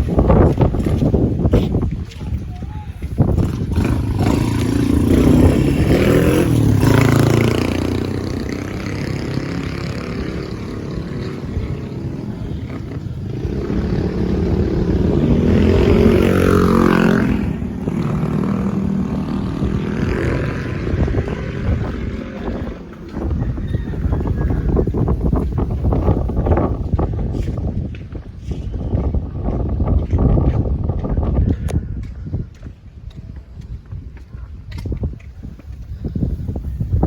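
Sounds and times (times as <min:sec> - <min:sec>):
vehicle engine revving: 0:03.3 - 0:27.5.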